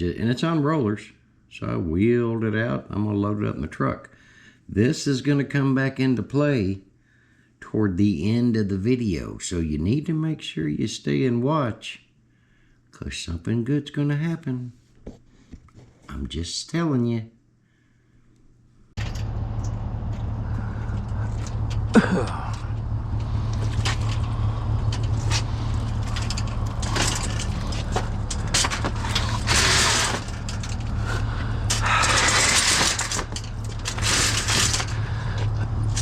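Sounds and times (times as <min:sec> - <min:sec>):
engine idling: 0:19.0 - 0:36.0
metal cage rattling and scraping: 0:19.0 - 0:36.0.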